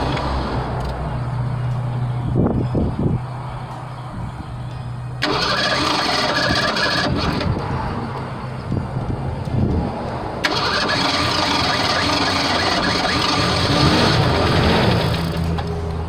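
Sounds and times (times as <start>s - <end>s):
engine cranking by starter: 0.0s - 1.2s, 5.2s - 8.8s, 10.4s - 16.0s.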